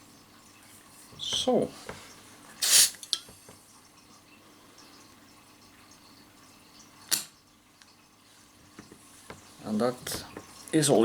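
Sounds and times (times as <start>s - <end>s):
gas hissing from nozzle: 2.6s - 3.0s.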